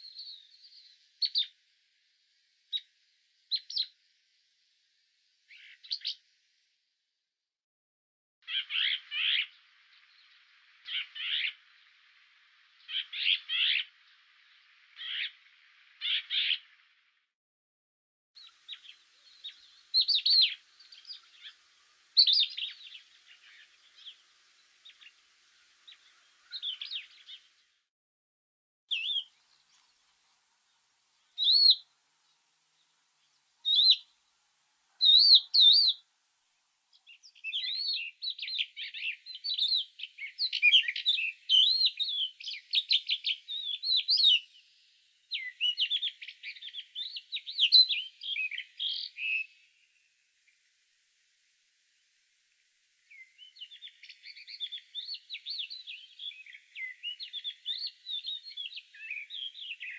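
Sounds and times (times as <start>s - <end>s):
songbirds chirping and singing: 0.0s - 1.6s, 3.5s - 4.0s, 8.4s - 17.0s, 18.4s - 27.7s, 28.9s - 34.2s, 34.9s - 36.0s, 36.9s - 49.8s, 53.1s - 59.9s
whistled bird calls: 0.0s - 1.6s, 3.5s - 4.0s, 5.5s - 6.2s, 8.4s - 10.2s, 10.8s - 11.6s, 12.8s - 13.9s, 14.9s - 15.4s, 16.0s - 16.6s, 18.4s - 25.2s, 25.8s - 27.5s, 28.9s - 29.9s, 31.3s - 31.9s, 33.6s - 34.1s, 34.9s - 36.0s, 37.0s - 49.7s, 53.0s - 59.9s.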